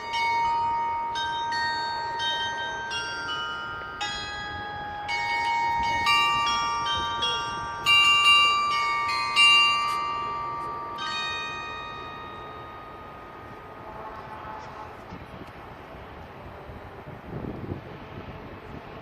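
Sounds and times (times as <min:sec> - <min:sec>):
carillon bells playing melody: 0:00.0 - 0:13.9.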